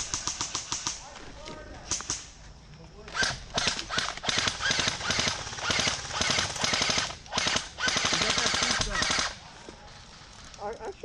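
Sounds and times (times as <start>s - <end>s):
airsoft guns firing bursts: 0.0s - 1.0s, 3.1s - 9.4s.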